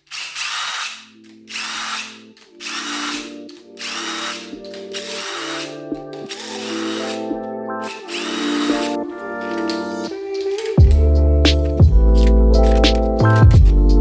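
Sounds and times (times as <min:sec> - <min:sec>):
power tool short bursts: 0:00.0 - 0:05.7
background music with bass line: 0:10.8 - 0:14.0.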